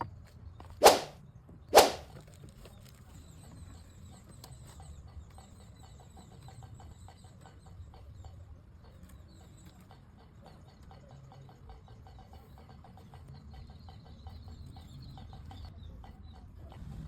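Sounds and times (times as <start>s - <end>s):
sharp swishes through air: 0.8s - 2.1s
faint high-pitched chirping: 2.2s - 17.0s.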